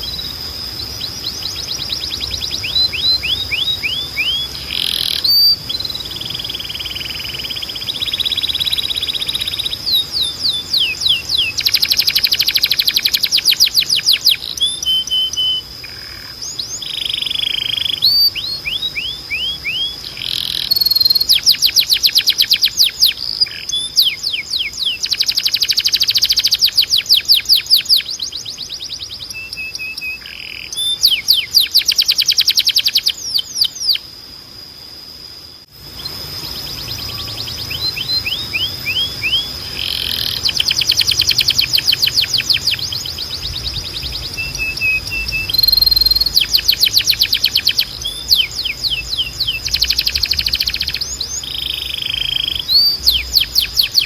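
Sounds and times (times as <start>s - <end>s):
canary singing: 0.0s - 34.1s, 35.7s - 54.0s
steady high tone: 35.6s - 43.2s.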